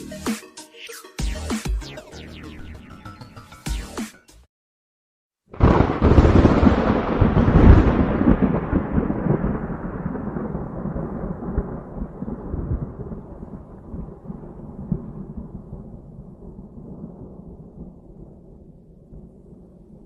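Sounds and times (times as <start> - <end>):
deep rumbling boom: 5.6 - 20.0.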